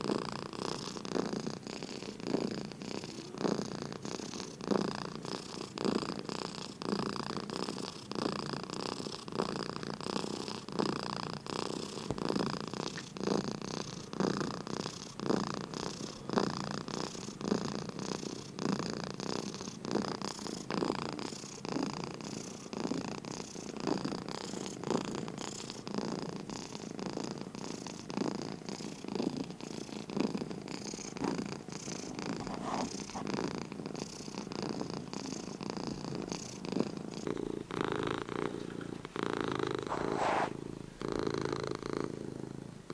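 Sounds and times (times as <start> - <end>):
cat purring: 0.0 - 42.9.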